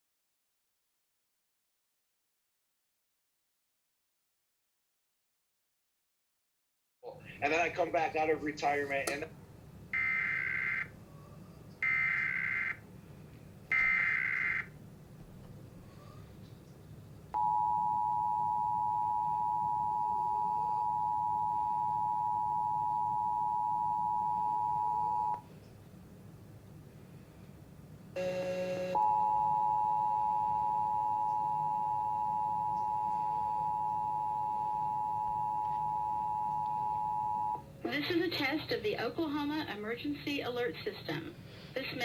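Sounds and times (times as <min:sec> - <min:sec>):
two-tone alert signal: 0:28.2 - 0:37.6.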